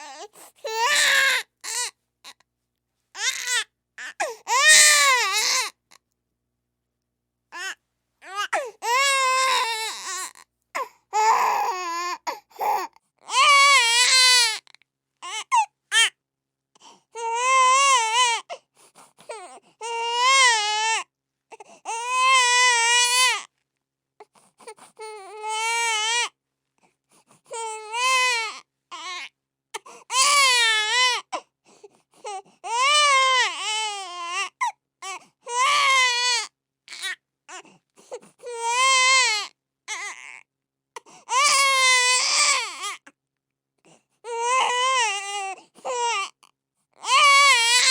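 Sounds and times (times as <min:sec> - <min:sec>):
infant crying: 0:00.0 - 0:01.9, 0:03.2 - 0:05.8, 0:07.6 - 0:16.2, 0:17.2 - 0:18.6, 0:19.2 - 0:23.5, 0:24.9 - 0:26.4, 0:27.5 - 0:31.4, 0:32.2 - 0:40.4, 0:41.0 - 0:43.1, 0:44.2 - 0:47.9.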